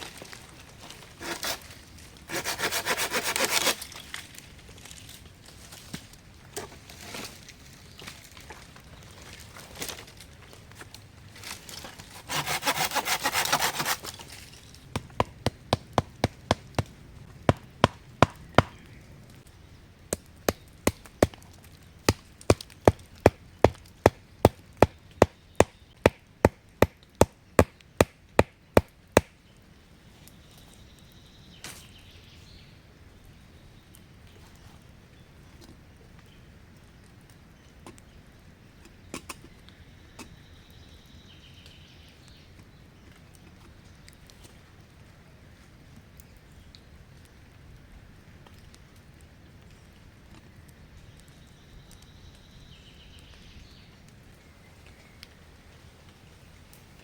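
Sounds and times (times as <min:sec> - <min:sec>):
hand saw cutting wood: 0:01.2 - 0:01.7, 0:02.3 - 0:03.8, 0:12.0 - 0:14.3
sharp chopping strikes: 0:14.9 - 0:18.8, 0:22.1 - 0:29.3.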